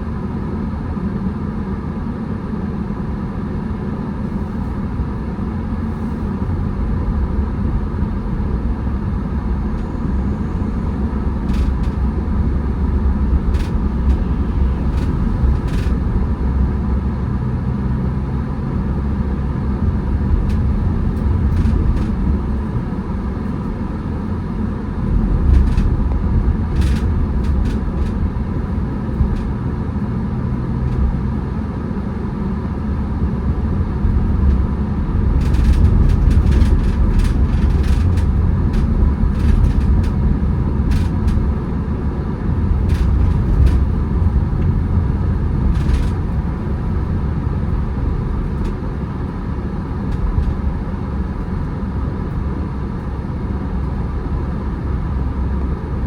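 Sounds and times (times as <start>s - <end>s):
car engine and tyres rumbling: 0.0s - 56.0s
light clicks and ticks: 9.8s - 12.1s.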